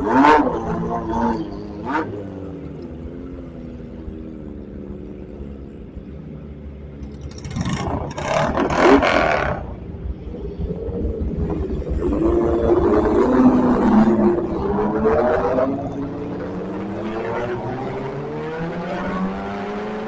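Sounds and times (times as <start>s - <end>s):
motorcycle engine droning: 0.0s - 20.0s
engine revving burst: 7.2s - 9.9s.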